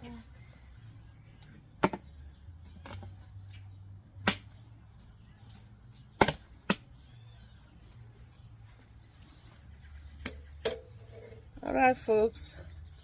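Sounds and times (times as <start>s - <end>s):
sharp knocks of hard objects: 1.8s - 2.1s, 4.2s - 4.6s, 6.2s - 6.9s.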